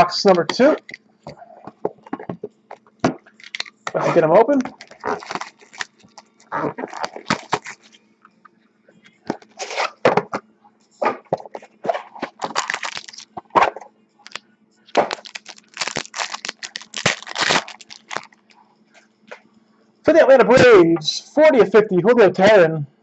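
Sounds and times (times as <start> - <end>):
cardboard and wrappers tearing: 3.4 - 7.9, 12.0 - 13.3, 14.3 - 18.3.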